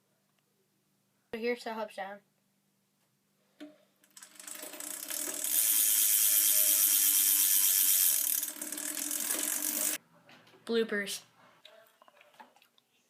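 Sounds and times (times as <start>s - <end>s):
bicycle hub ratcheting buzz: 4.1s - 10.0s.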